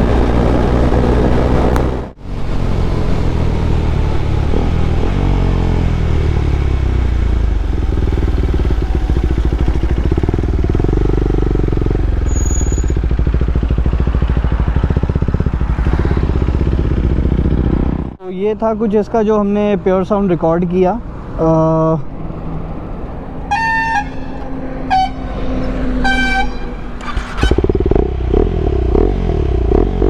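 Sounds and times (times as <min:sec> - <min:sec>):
motorcycle engine running: 0:03.4 - 0:18.2, 0:25.1 - 0:30.0.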